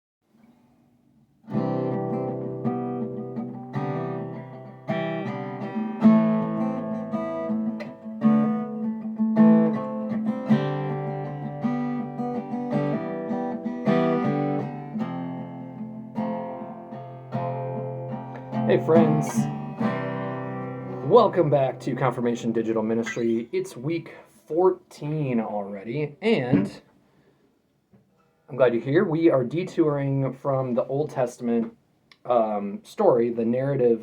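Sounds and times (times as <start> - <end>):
acoustic guitar strumming chords: 1.5 - 23.9.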